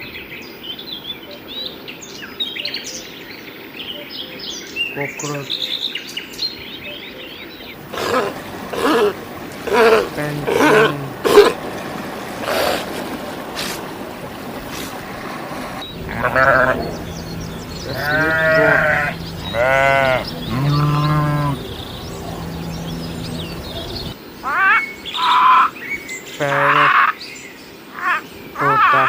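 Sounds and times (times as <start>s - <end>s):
penguins braying calls: 7.8s - 13.0s, 16.0s - 25.7s
high chirping notes: 15.8s - 24.2s.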